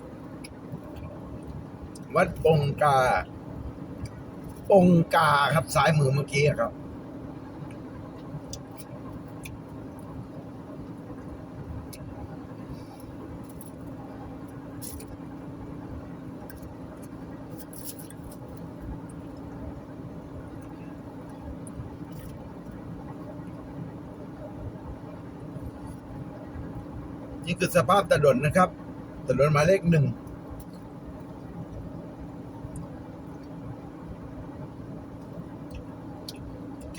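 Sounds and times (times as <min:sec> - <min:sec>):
car road and engine noise: 0:00.0 - 0:36.9.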